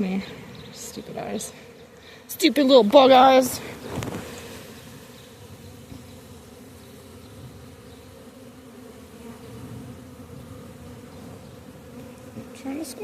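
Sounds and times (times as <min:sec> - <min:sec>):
bees buzzing: 0:00.0 - 0:13.0.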